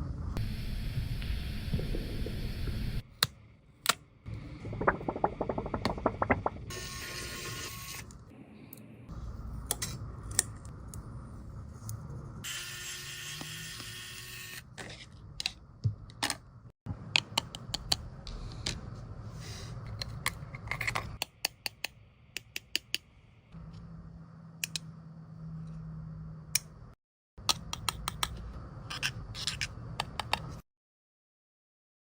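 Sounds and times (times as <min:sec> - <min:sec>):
low steady hum: 0:00.0 - 0:03.0.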